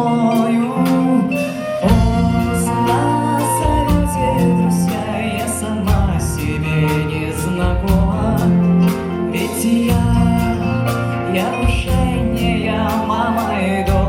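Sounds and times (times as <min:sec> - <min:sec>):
bass line: 0:00.0 - 0:14.0
live folk-rock band: 0:00.0 - 0:14.0
drum hits: 0:01.8 - 0:03.0, 0:09.9 - 0:12.6.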